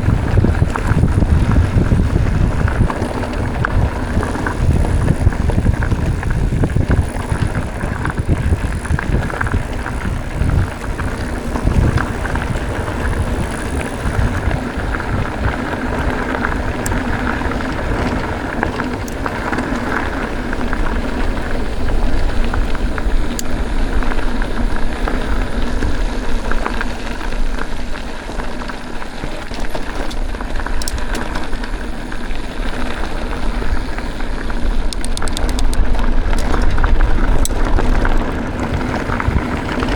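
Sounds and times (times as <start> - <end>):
bike tyres crackling on dirt trail: 0.0 - 39.9
clicks and rattles: 29.4 - 31.6, 34.8 - 39.2.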